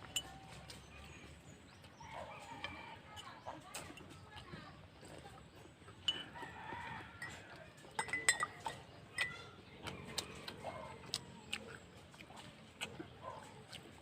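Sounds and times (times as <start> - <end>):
cutlery clinking on a plate: 0.0 - 0.6, 6.0 - 9.4.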